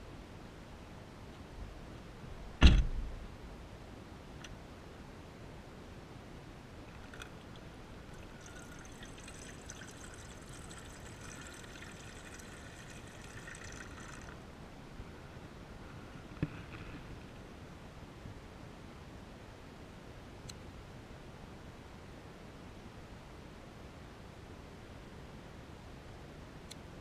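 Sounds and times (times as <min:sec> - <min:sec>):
water pouring into pot: 0:06.9 - 0:14.4.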